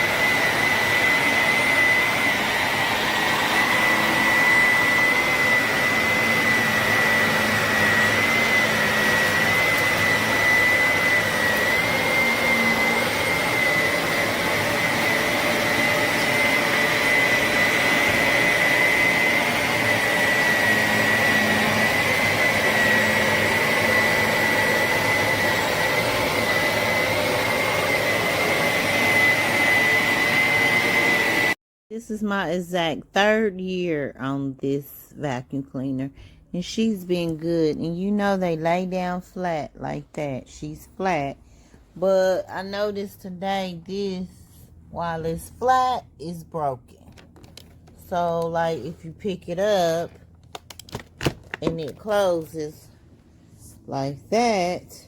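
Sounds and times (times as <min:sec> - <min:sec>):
vacuum cleaner running: 0:00.0 - 0:31.6, 0:45.0 - 0:46.0, 0:47.1 - 0:52.9.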